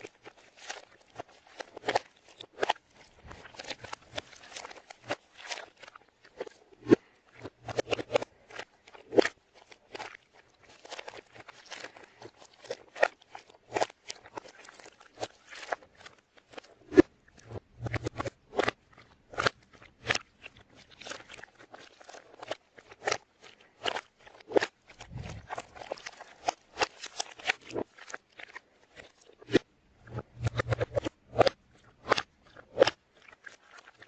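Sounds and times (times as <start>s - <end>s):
reversed clicks and crunches: 16.8s - 18.7s, 24.5s - 28.0s, 29.4s - 33.0s.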